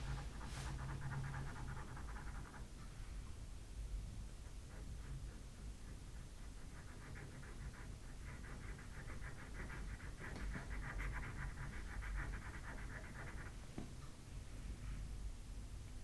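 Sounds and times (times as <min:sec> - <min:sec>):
pastel pencil scratching on paper: 0:00.0 - 0:02.7, 0:04.4 - 0:13.6.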